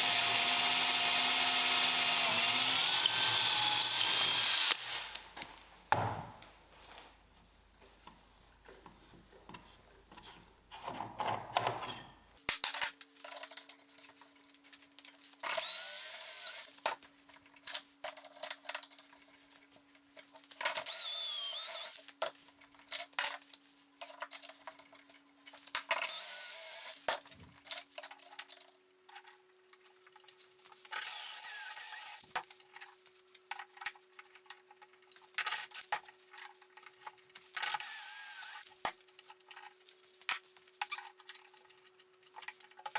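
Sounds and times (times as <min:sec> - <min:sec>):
power tool cutting wood: 0:00.0 - 0:04.8, 0:37.8 - 0:38.7.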